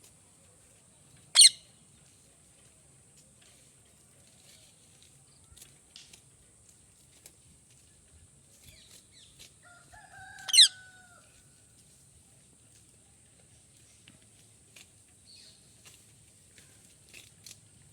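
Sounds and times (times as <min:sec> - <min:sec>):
parrot shrill squawk: 0:01.4 - 0:01.6, 0:10.5 - 0:10.8
parrot crow-like call: 0:10.2 - 0:11.0.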